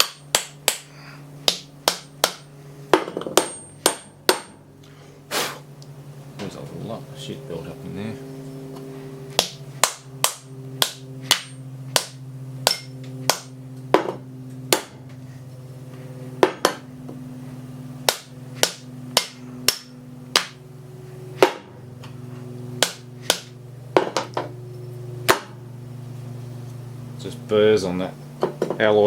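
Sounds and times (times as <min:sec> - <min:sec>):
hammer striking metal: 0:00.0 - 0:00.9, 0:01.5 - 0:04.6, 0:09.3 - 0:15.0, 0:16.4 - 0:16.8, 0:18.0 - 0:20.6, 0:21.4 - 0:21.7, 0:22.8 - 0:24.5, 0:25.3 - 0:25.6
steady low hum: 0:00.0 - 0:29.0.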